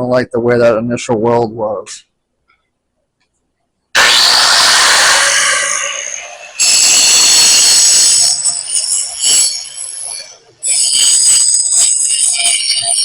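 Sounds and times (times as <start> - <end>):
angle grinder grinding steel: 4.0 - 13.0.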